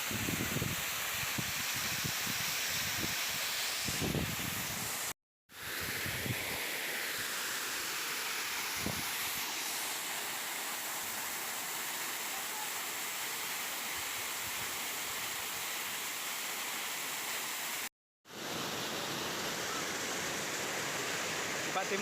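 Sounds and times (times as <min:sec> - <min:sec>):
waterfall rushing: 0:05.7 - 0:22.0.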